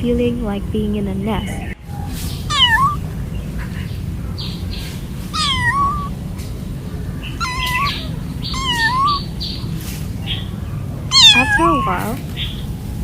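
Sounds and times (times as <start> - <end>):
steady low hum: 0.0 - 13.0
kittens meowing: 2.4 - 3.1, 5.2 - 6.2, 7.2 - 9.5, 11.1 - 12.2.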